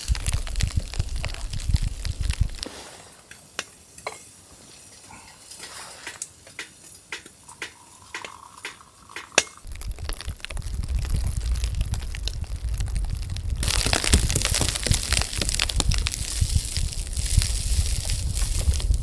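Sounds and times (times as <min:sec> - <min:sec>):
crunching rustle: 0:00.0 - 0:07.5, 0:09.6 - 0:19.0
metal cookware clinking: 0:03.3 - 0:09.6.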